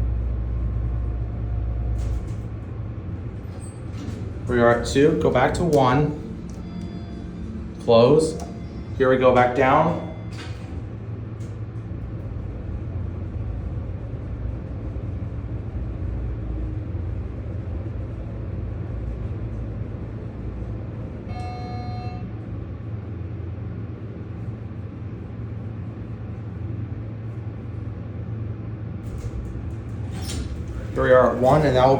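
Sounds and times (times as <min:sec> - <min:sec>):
elevator low hum: 0:00.0 - 0:31.9
electronic tone: 0:21.3 - 0:22.4.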